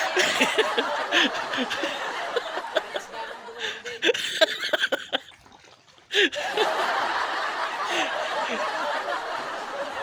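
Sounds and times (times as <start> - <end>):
men laughing: 0.0 - 5.3, 6.1 - 10.0.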